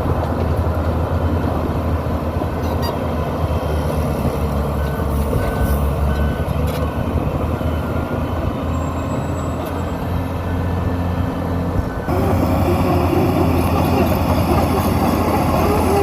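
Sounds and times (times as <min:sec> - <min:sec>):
dozer diesel engine under load: 0:00.0 - 0:16.0.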